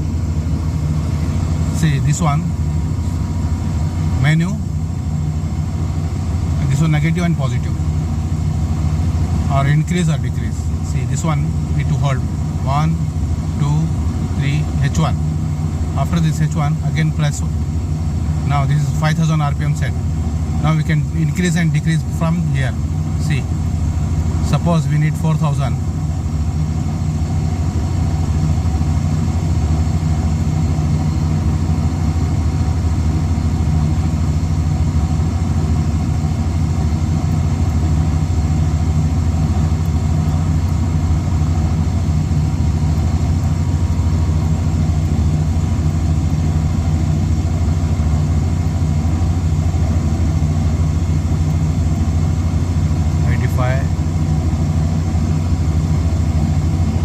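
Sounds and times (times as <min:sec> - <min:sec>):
air conditioner humming: 0:00.0 - 0:57.0.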